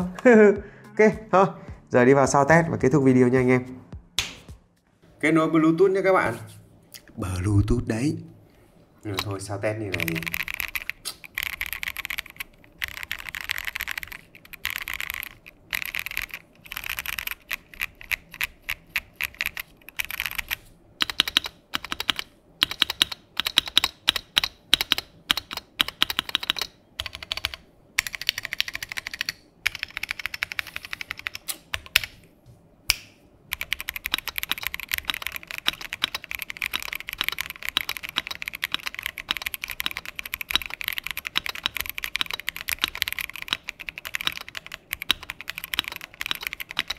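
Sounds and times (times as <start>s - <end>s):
mechanical keyboard typing: 9.1s - 32.2s, 33.5s - 46.9s.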